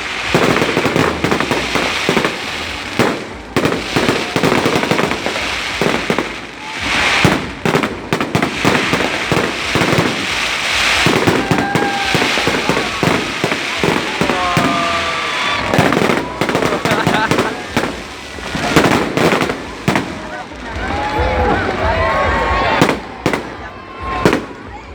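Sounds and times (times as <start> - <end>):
fireworks crackling: 0.0 - 24.9
fireworks cracks and bangs: 0.0 - 24.9.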